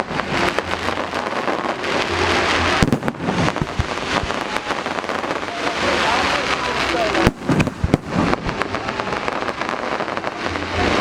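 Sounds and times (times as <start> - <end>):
fireworks crackling overhead: 0.0 - 11.0
sharp firework bang: 2.8 - 4.6, 7.2 - 8.6.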